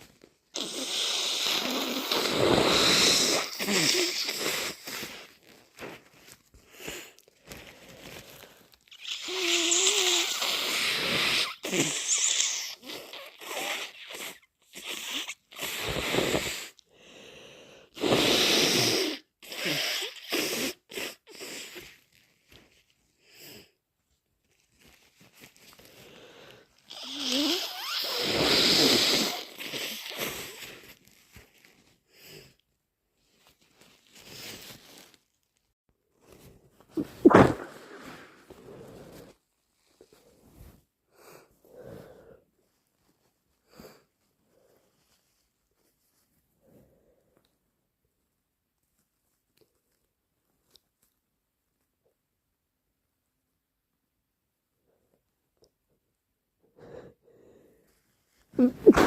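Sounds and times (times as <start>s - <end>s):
person blowing nose: 0.5s - 22.3s, 25.4s - 32.5s, 34.1s - 35.2s, 36.3s - 39.3s, 58.6s - 59.0s
sniffs and snorts: 0.6s - 5.4s, 18.0s - 22.0s, 25.8s - 31.0s, 37.0s - 39.4s, 58.6s - 59.0s.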